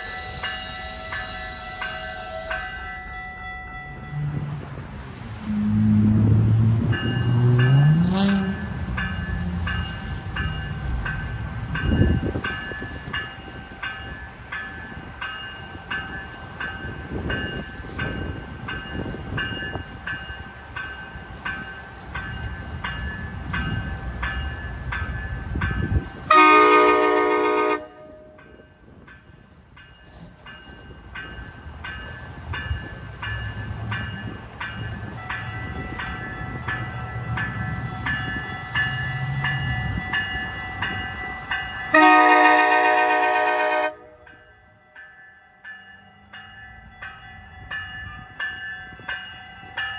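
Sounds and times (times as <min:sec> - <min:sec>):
train air horn blast: 0:00.0 - 0:03.2, 0:26.3 - 0:28.4, 0:41.9 - 0:44.3
train bell ringing: 0:00.0 - 0:05.6, 0:06.8 - 0:49.9
passenger train rumbling past: 0:00.0 - 0:49.9.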